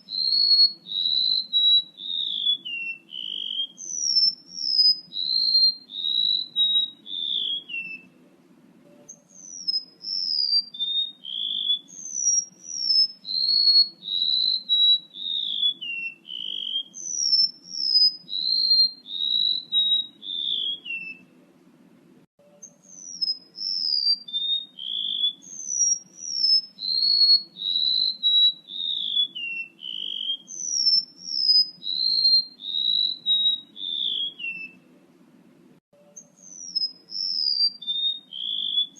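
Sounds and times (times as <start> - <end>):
bird whistled song: 0.0 - 8.2, 8.9 - 21.4, 22.5 - 34.9, 36.0 - 38.9
faint low hum: 5.9 - 10.4, 19.1 - 23.9, 33.8 - 37.2.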